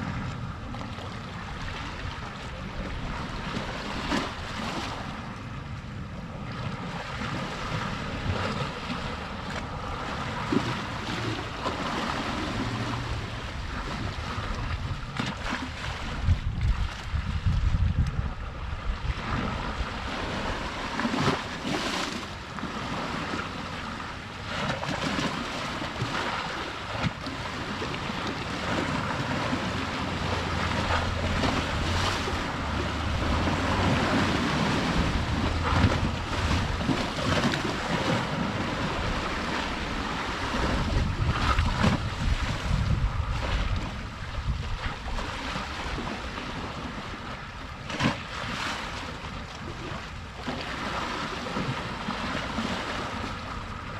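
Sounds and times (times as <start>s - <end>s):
sea waves washing ashore: 0.0s - 53.9s
wind on microphone: 0.0s - 53.9s.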